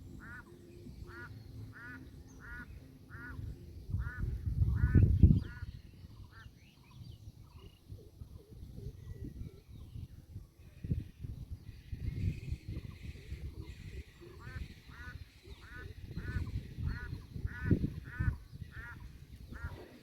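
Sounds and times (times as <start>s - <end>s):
bird honking: 0.1s - 6.6s.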